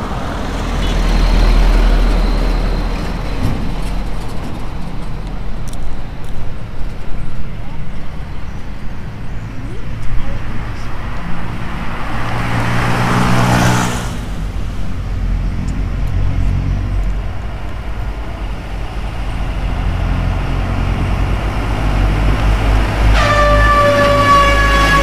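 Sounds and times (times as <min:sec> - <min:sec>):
truck engines and tyres: 0:00.0 - 0:25.0
truck air horn blast: 0:23.0 - 0:25.0.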